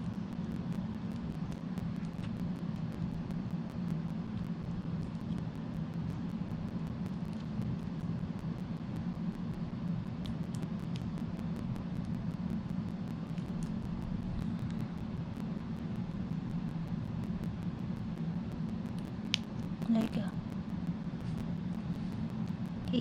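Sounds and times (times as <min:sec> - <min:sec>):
background hiss: 0:00.0 - 0:23.0
steady low hum: 0:00.0 - 0:23.0
faint small clicks: 0:10.2 - 0:11.2, 0:18.9 - 0:19.7.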